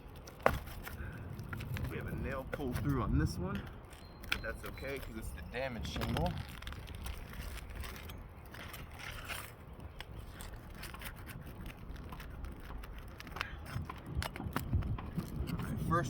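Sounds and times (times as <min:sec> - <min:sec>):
metal tools scraping shingles: 0:01.8 - 0:11.4.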